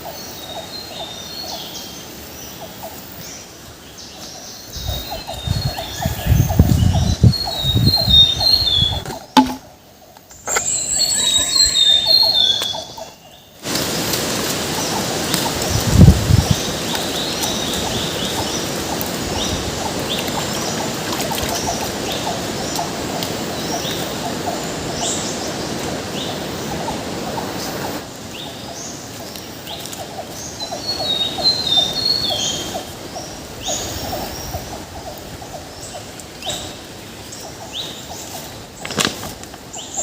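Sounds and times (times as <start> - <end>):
birds chirping: 0.0 - 40.0
low thump: 9.1 - 9.6
trilling bird call: 10.3 - 13.5
steady hiss: 12.4 - 21.0.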